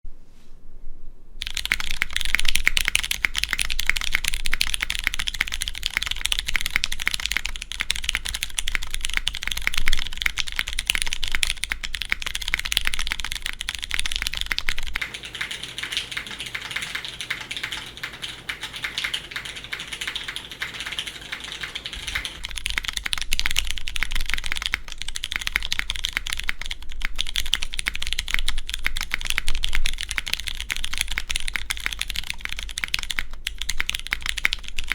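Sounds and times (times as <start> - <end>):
fast typing on mechanical keyboard: 1.4 - 34.9.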